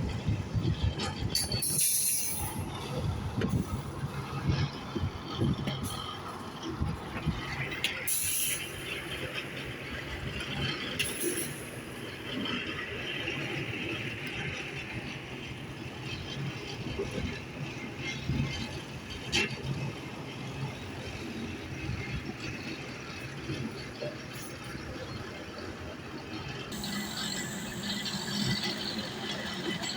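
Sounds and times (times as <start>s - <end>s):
machinery rumbling: 26.7s - 29.9s.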